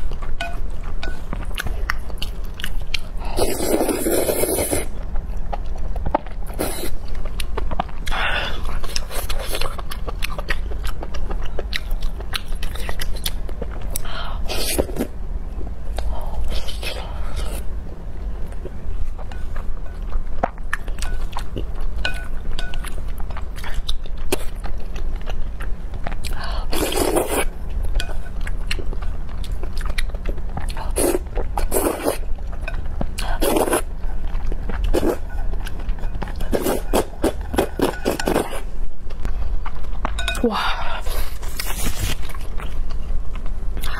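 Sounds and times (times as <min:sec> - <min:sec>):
chewing and mouth clicks: 0:05.0 - 0:14.1, 0:18.5 - 0:40.5
soft rustling: 0:41.2 - 0:42.5.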